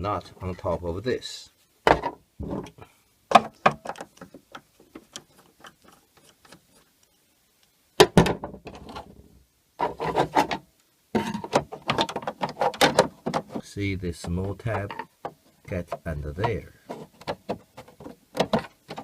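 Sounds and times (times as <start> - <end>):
plastic rubbing and scraping: 3.4 - 7.1, 8.4 - 9.2, 9.8 - 19.0
plastic knocking: 16.4 - 19.0.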